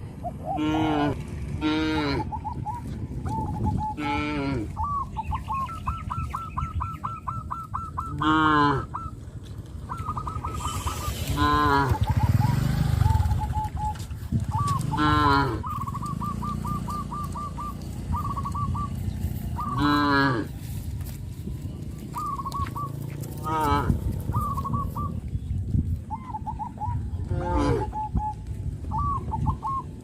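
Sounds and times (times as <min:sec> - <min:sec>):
cattle mooing: 0:00.6 - 0:02.3, 0:04.0 - 0:04.8, 0:08.2 - 0:08.9, 0:10.7 - 0:12.1, 0:14.8 - 0:15.6, 0:19.6 - 0:20.5, 0:23.4 - 0:24.0, 0:27.3 - 0:27.9
bird calling high notes: 0:02.2 - 0:20.2, 0:22.0 - 0:23.7.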